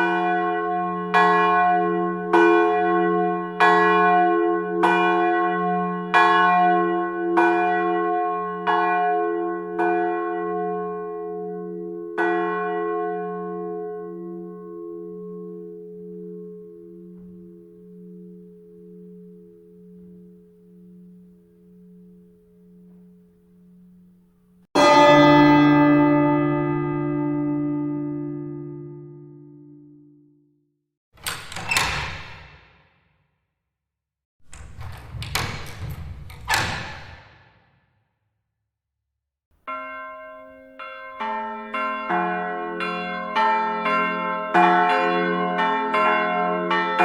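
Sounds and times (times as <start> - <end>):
church bell ringing: 0.0 - 24.0, 24.8 - 30.4, 39.7 - 47.0.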